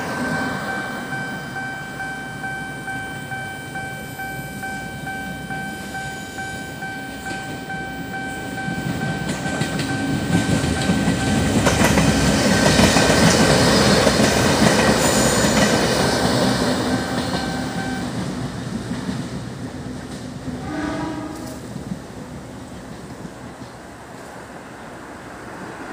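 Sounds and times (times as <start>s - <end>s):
level crossing alarm tone: 0.0s - 11.9s, 17.0s - 18.1s
diesel train passing: 0.0s - 25.9s
train wheels clattering: 6.9s - 19.4s.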